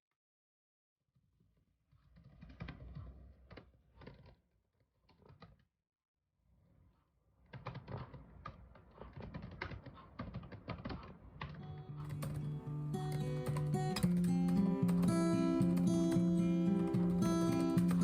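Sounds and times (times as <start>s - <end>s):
typing on computer keyboard: 9.0s - 18.0s.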